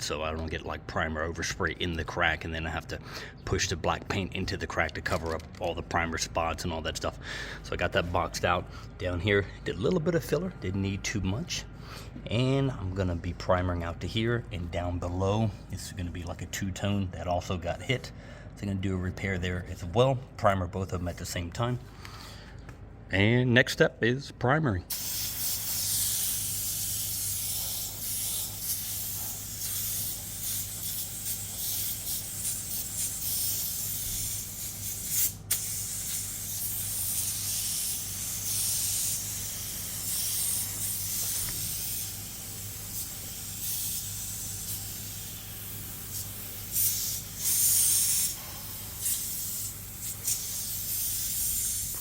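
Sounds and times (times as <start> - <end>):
steady low hum: 0.0 - 52.0
paint spray gun hissing: 24.9 - 52.0.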